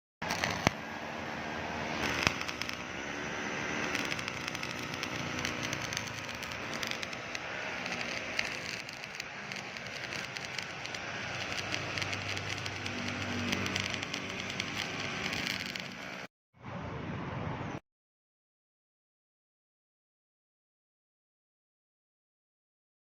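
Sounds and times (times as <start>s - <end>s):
welding arc crackling: 0.2s - 16.3s.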